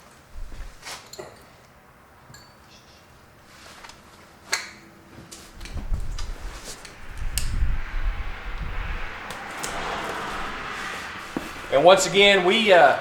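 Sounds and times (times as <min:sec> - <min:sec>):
low rumbling rustle: 0:00.3 - 0:00.8, 0:05.5 - 0:12.4.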